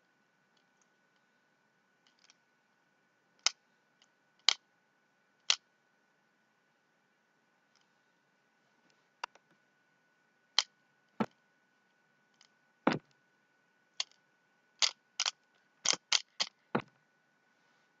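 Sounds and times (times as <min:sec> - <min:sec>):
fidget spinner clicks: 0:03.4 - 0:04.6, 0:14.0 - 0:14.2, 0:14.8 - 0:16.6.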